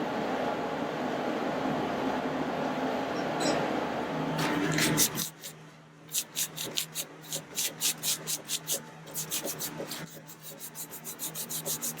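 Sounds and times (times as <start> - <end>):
knife scraping on whetstone: 4.4 - 12.0.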